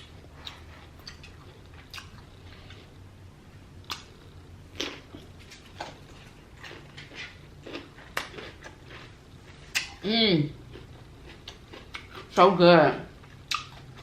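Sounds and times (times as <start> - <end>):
wet chewing and mouth smacks: 0.0 - 2.9, 3.8 - 4.2, 4.8 - 10.0, 10.7 - 12.4, 13.2 - 14.0
steady low hum: 0.0 - 14.0.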